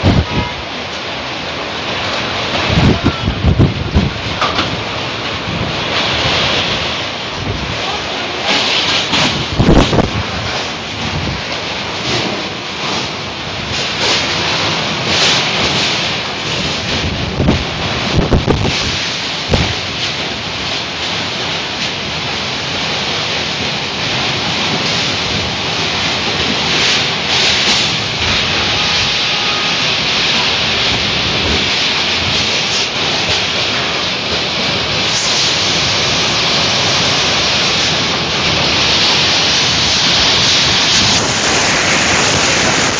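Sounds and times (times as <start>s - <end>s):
wind buffeting microphone: 0.0s - 0.8s, 2.5s - 7.8s, 8.8s - 22.3s, 29.8s - 42.9s
heavy rain: 0.0s - 42.9s
strong storm wind: 0.0s - 42.9s.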